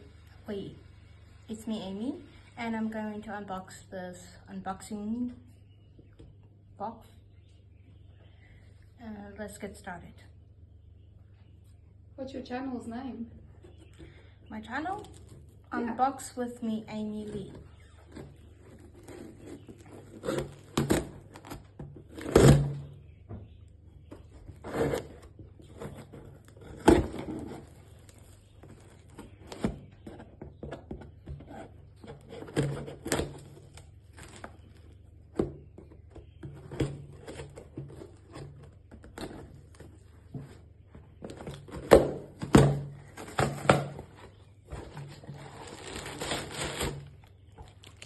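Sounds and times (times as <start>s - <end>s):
rustling: 16.9s - 23.0s, 31.2s - 48.0s.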